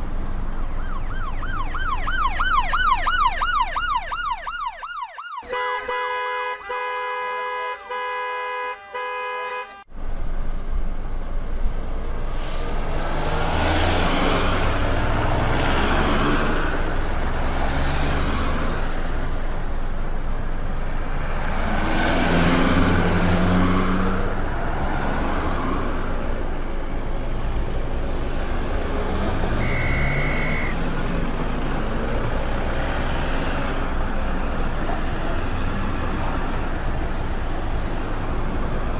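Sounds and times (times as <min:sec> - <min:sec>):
road traffic: 0:00.0 - 0:38.9
car horns honking: 0:05.4 - 0:09.9, 0:29.2 - 0:31.0
engines revving: 0:12.0 - 0:19.7, 0:20.7 - 0:38.9
short high beep: 0:29.5 - 0:30.8.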